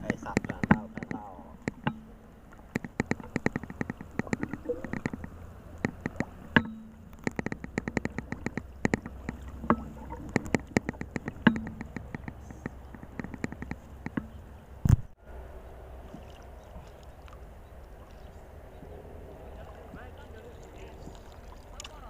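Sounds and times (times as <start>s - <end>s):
hollow knocks: 0.0s - 15.2s
water splashing and slapping: 0.0s - 15.2s, 15.8s - 22.0s.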